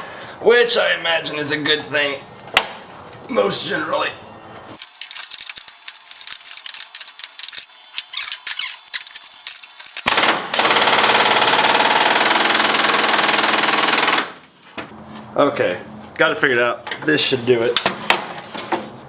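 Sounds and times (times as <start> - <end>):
pneumatic impact wrench hammering: 9.6 - 14.4.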